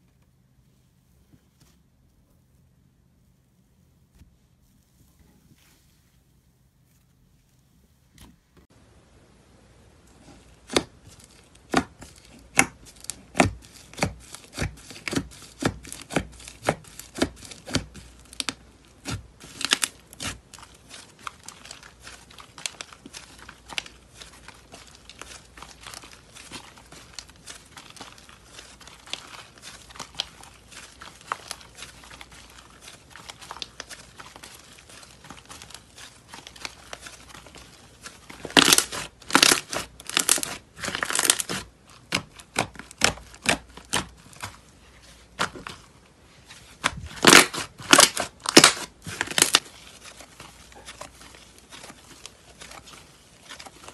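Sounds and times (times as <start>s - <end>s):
slime popping and crackling: 10.5s - 44.6s, 46.6s - 53.9s.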